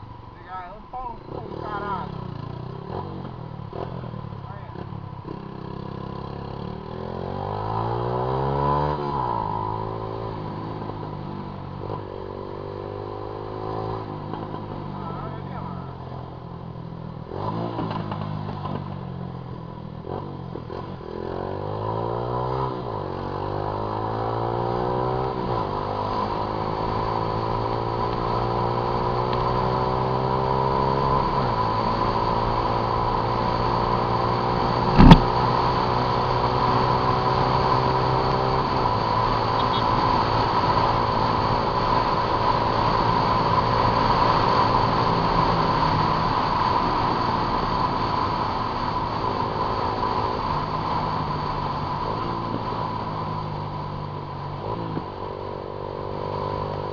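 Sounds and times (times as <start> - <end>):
motorcycle engine accelerating: 1.0 - 56.9
steady rushing noise: 34.8 - 35.8
sharp loud bang: 35.0 - 35.4.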